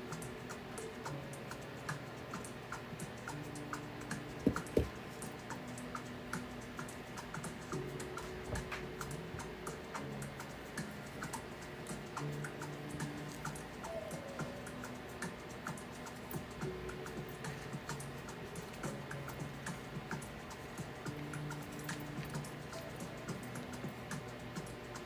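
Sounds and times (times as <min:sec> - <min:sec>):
quiet background music: 0:00.0 - 0:25.0
sharp knocks: 0:04.4 - 0:04.9.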